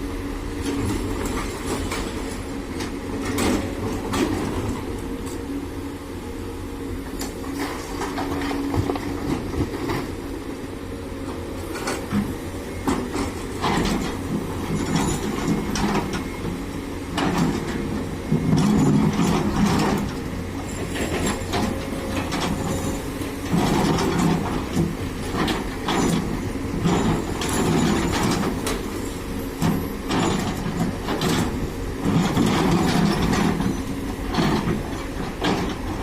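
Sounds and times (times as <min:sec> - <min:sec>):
excavator diesel engine: 0:00.0 - 0:36.0.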